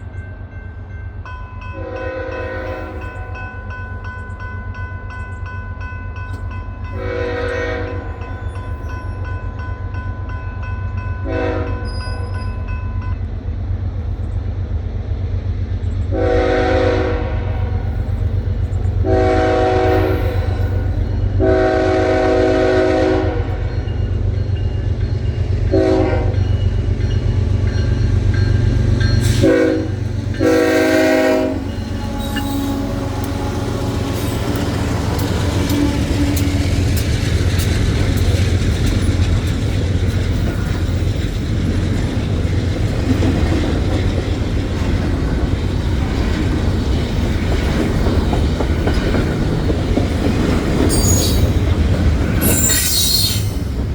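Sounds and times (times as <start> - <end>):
diesel locomotive rumble: 0.0 - 53.9
train horn blasts: 1.7 - 3.2, 6.9 - 8.8, 11.2 - 12.5, 16.1 - 17.9, 19.0 - 23.7, 25.6 - 26.6, 29.2 - 36.7
train cars rail clatter: 17.6 - 53.9.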